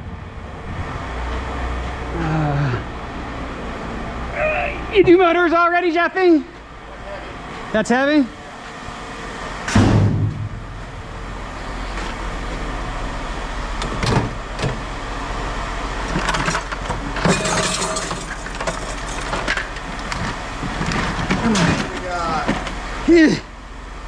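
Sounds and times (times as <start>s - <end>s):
vehicle engine hum: 0.0s - 24.0s
metal clanks and rattles: 16.0s - 22.8s.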